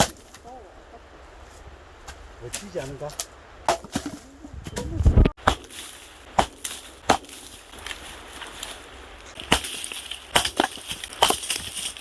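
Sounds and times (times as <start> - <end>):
axe splitting wood: 5.4 - 7.5, 9.4 - 12.0.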